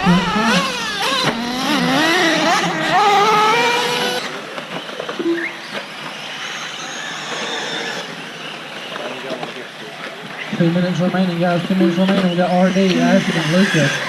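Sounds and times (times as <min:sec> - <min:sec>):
electric motors whining: 0:00.0 - 0:09.1, 0:10.4 - 0:14.0
short tone: 0:05.2 - 0:05.6.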